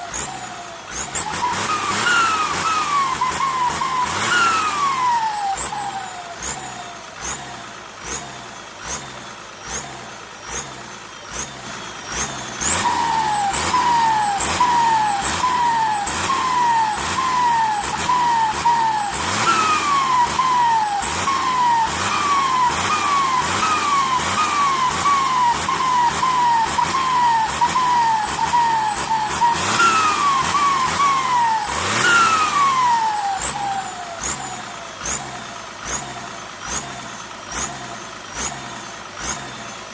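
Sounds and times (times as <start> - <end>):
diesel engine: 0.0 - 39.9
turbo whistling: 0.1 - 6.9, 11.4 - 36.1.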